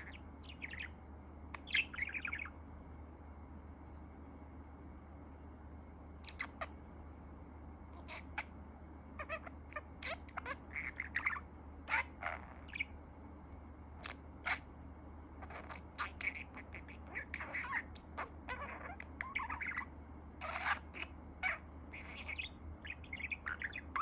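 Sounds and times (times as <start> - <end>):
budgerigar chattering: 0.0 - 2.5, 6.2 - 6.7, 8.0 - 8.5, 9.2 - 12.9, 15.4 - 24.0
steady low hum: 0.0 - 24.0.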